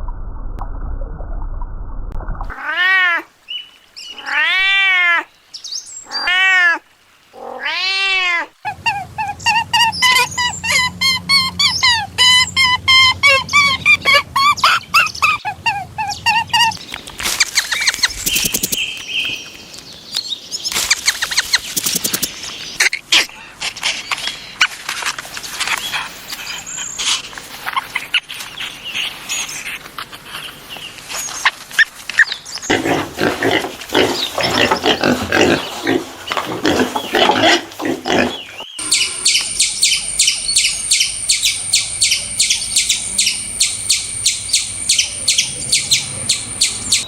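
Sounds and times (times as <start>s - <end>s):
crackly noise: 0.0s - 4.6s, 16.5s - 39.6s
cat meowing: 2.5s - 3.3s, 4.1s - 5.3s, 6.1s - 6.8s, 7.4s - 10.3s.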